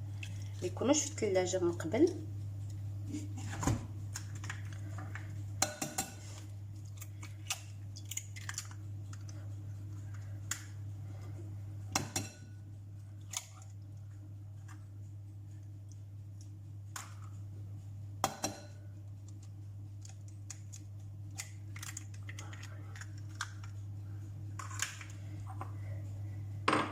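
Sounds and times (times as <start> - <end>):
steady low hum: 0.0 - 26.9
eggs cracking on bowl rim: 6.8 - 9.4, 19.3 - 23.8.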